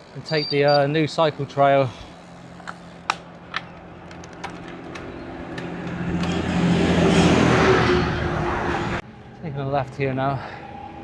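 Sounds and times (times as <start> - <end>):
vehicle engine passing: 3.9 - 9.0.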